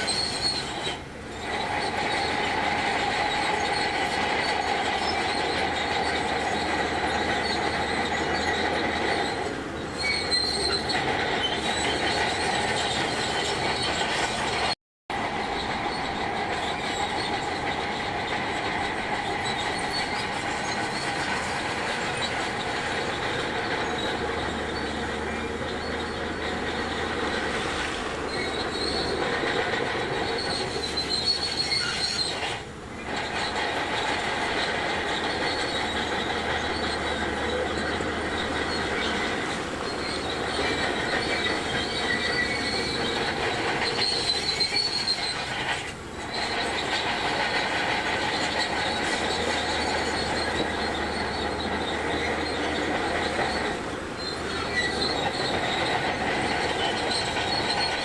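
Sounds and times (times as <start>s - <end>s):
metallic squeal and track clatter: 0.0s - 58.0s
bulldozer engine running: 0.1s - 31.9s.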